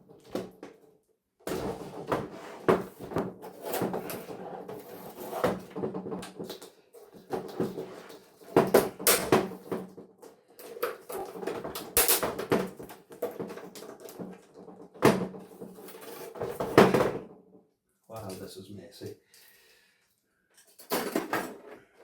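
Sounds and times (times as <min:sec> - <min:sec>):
plastic and metal parts clattering: 0:01.5 - 0:17.4, 0:20.6 - 0:22.0.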